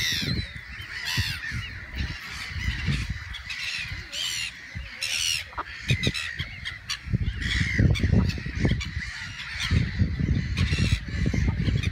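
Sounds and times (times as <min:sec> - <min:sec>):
waterfowl honking: 0:00.0 - 0:11.9.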